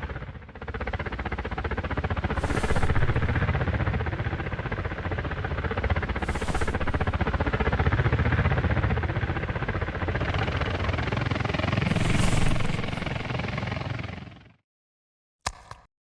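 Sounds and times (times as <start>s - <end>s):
rapid fluttering noise: 2.2s - 4.3s, 5.9s - 9.1s, 11.2s - 14.0s
deep rumble: 2.4s - 4.0s, 6.1s - 7.8s, 11.8s - 13.6s.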